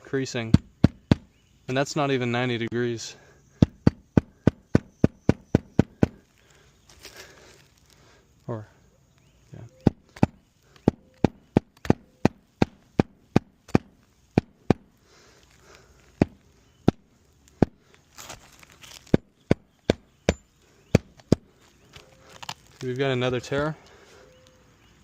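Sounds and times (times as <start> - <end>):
shingle rustling: 0.3 - 24.2
hammer striking roofing nails: 0.5 - 1.3, 3.6 - 6.2, 9.8 - 14.9, 21.0 - 21.4.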